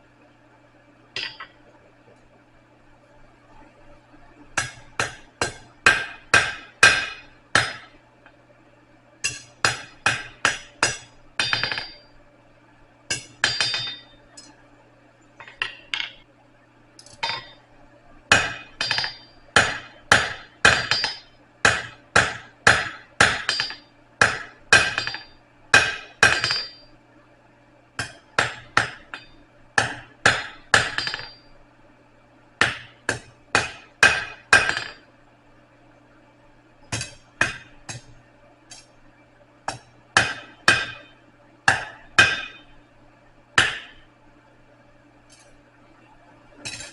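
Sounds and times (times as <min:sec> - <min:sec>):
hammer striking steel on anvil: 0:01.2 - 0:01.6, 0:04.6 - 0:08.0, 0:09.2 - 0:12.1, 0:13.1 - 0:14.5, 0:17.0 - 0:17.6, 0:18.3 - 0:26.9, 0:28.0 - 0:31.5, 0:32.6 - 0:35.1, 0:36.9 - 0:38.9, 0:39.7 - 0:42.8, 0:43.6 - 0:44.1, 0:46.6 - 0:46.9.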